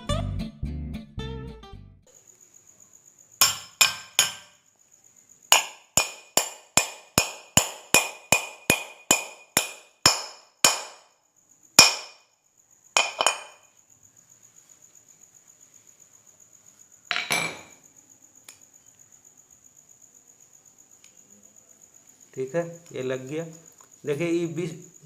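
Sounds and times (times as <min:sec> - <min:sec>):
hammer tapping metal: 0:03.4 - 0:04.5, 0:05.5 - 0:11.1, 0:11.8 - 0:12.2, 0:13.0 - 0:13.6.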